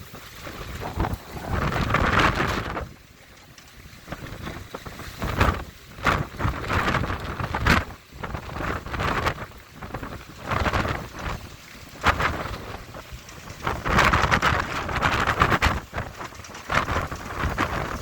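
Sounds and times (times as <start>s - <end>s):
wind gusting against microphone: 0.0s - 18.0s.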